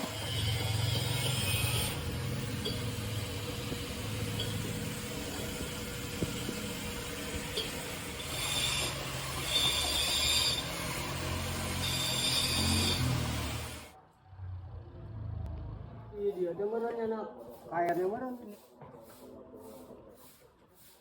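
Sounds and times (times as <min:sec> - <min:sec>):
arc welding crackling hiss: 0:02.1 - 0:13.9.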